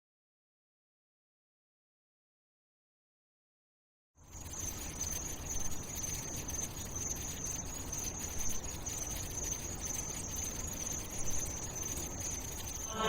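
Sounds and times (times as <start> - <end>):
high-pitched buzzing whine: 4.2 - 13.0.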